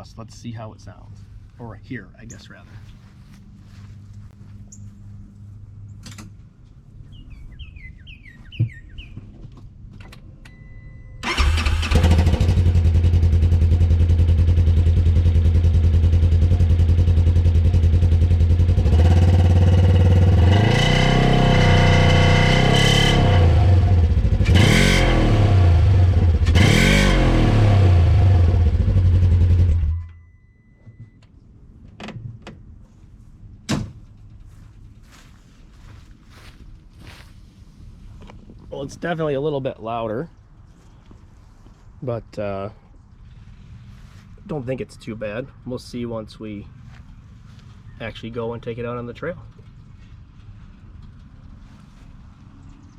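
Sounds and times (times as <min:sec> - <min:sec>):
engine idling and revving: 0:11.2 - 0:30.1.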